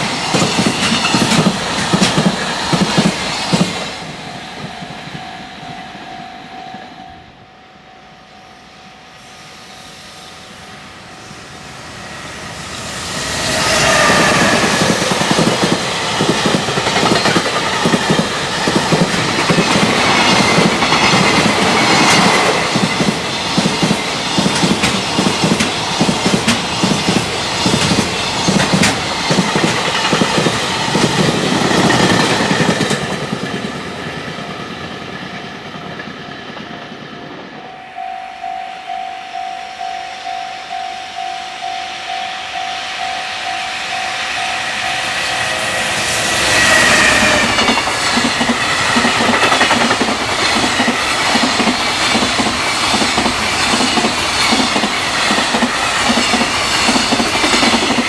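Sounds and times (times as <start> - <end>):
freight train wheels clattering: 0.0 - 6.0, 12.7 - 37.5, 44.2 - 58.0
level crossing warning bell: 3.8 - 9.6, 36.1 - 46.6
train electric motor: 9.1 - 35.3, 39.8 - 58.0.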